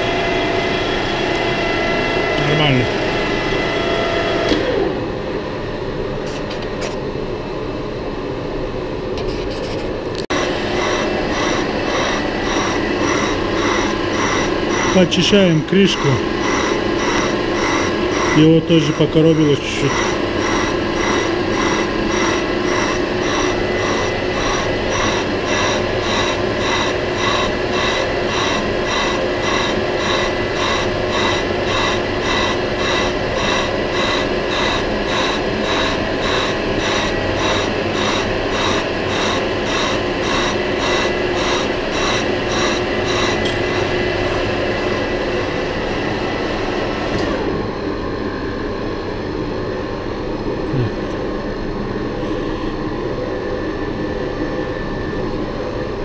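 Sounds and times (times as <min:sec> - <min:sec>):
metal lathe running: 0:10.3 - 0:47.4.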